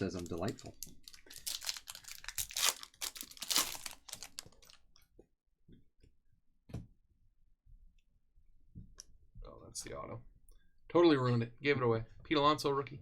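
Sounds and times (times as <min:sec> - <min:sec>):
packaging crinkling and tearing: 0:00.0 - 0:04.9.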